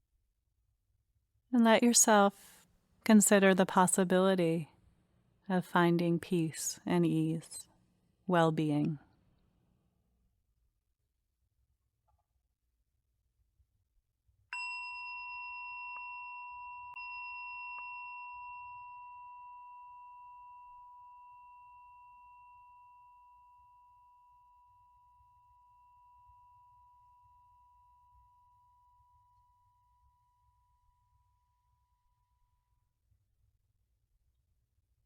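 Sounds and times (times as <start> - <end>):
singing bowl ringing: 14.5 - 31.5.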